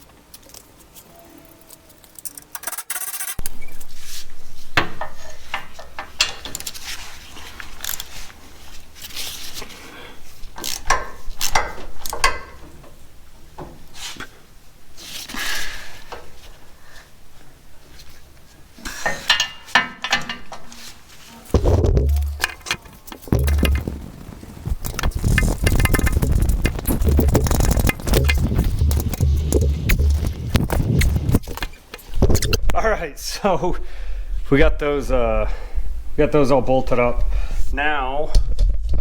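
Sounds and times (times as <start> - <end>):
low hum: 21.5 - 31.6
loud steady noise: 23.3 - 31.4.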